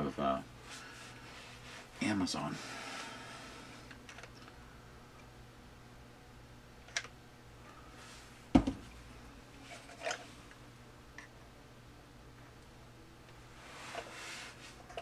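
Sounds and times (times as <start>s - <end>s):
faint steady hum: 0.0s - 15.0s
plastic parts knocking on workbench: 8.6s - 8.9s.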